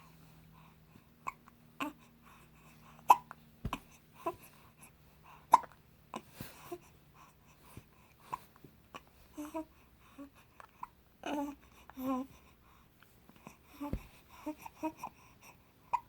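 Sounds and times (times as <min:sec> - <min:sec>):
baby hiccuping: 0:03.1 - 0:03.8, 0:05.5 - 0:05.8.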